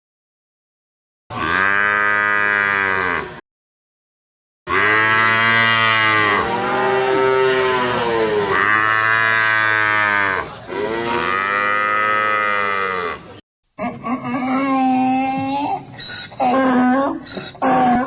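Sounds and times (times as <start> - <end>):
cow mooing: 1.3 - 3.4, 4.7 - 13.3.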